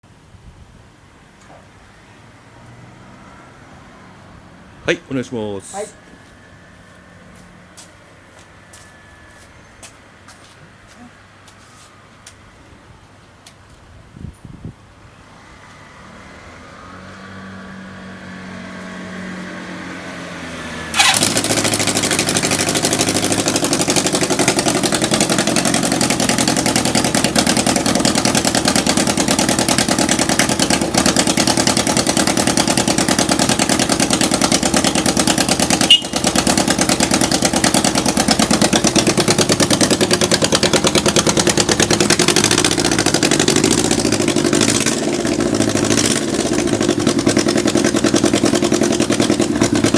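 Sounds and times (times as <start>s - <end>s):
electric starter whirring: 20.9s - 22.1s
motorcycle engine idling: 21.0s - 49.9s.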